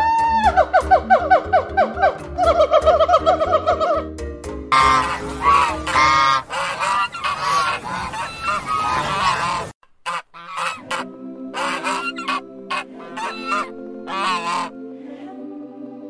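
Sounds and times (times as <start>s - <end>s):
goose honking: 4.7s - 14.8s.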